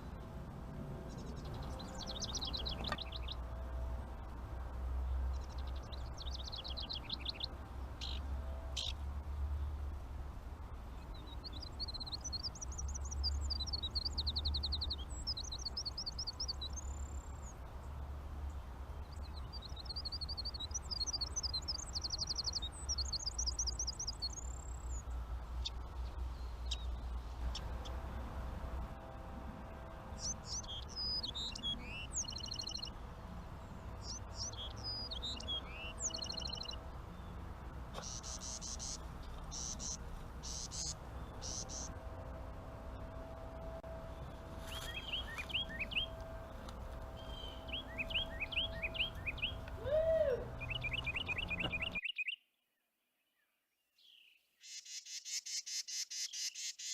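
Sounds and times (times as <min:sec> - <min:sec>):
songbirds singing: 0:01.0 - 0:04.4, 0:05.0 - 0:10.0, 0:10.7 - 0:56.9
low steady rumble: 0:32.6 - 0:51.9.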